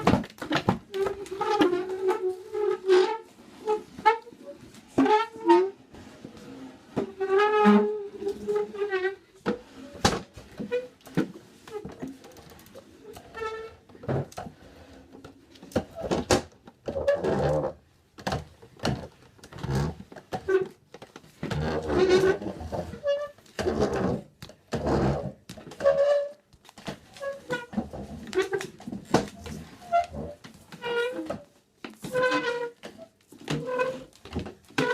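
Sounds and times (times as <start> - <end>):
chairs scraping on hard floor: 21.4 - 26.3, 26.9 - 34.9.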